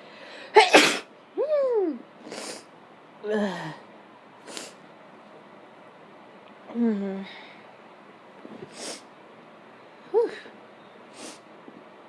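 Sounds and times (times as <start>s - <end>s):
person sneezing: 0.5s - 1.1s.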